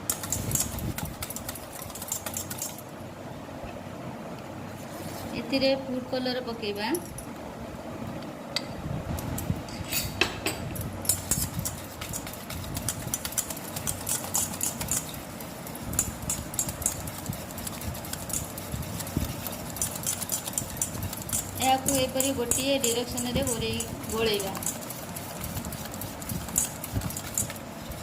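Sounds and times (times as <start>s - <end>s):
utensil stirring batter: 0.0s - 2.9s, 11.0s - 28.0s
utensil tapping bowl: 15.9s - 27.6s.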